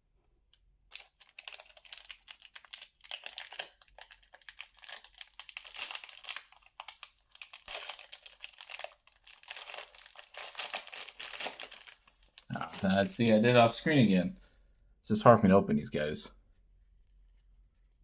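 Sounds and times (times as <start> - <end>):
wrapper tearing and crinkling: 0.9 - 13.4.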